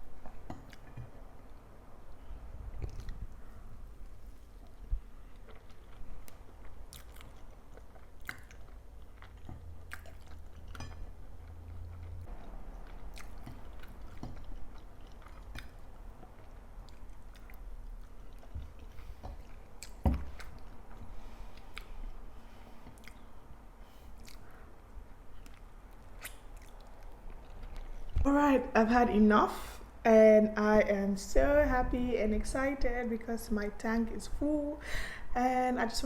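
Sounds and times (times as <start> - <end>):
person chewing food: 0.1 - 28.2
wet mouth clicks and smacks: 2.8 - 3.3, 22.8 - 23.3, 24.2 - 24.5, 25.4 - 27.8.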